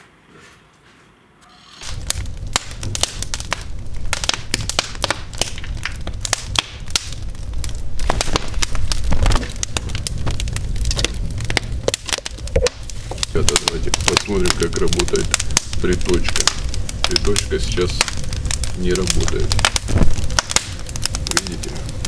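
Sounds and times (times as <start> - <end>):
low steady rumble: 1.8 - 22.0
wood fire crackling and popping: 1.8 - 22.0.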